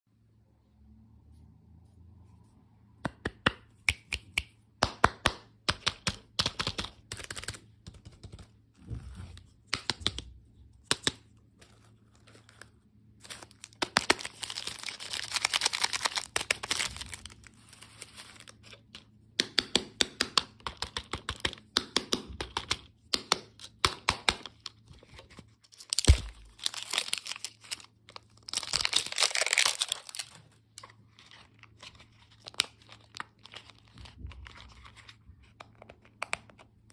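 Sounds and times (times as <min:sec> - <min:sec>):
plastic wrappers crackling: 0:12.2 - 0:18.7, 0:25.7 - 0:34.2
packaging tearing and crinkling: 0:13.2 - 0:18.8, 0:25.7 - 0:35.0.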